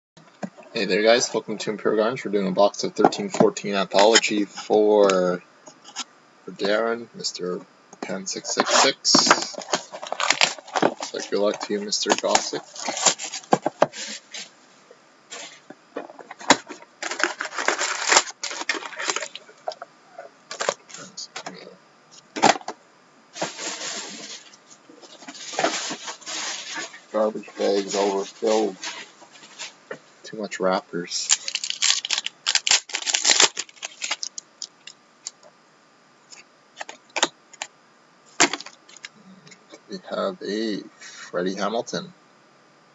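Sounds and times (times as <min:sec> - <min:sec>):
wrappers crinkling and tearing: 0:08.5 - 0:14.4, 0:16.5 - 0:19.5, 0:25.2 - 0:29.7, 0:31.2 - 0:34.9.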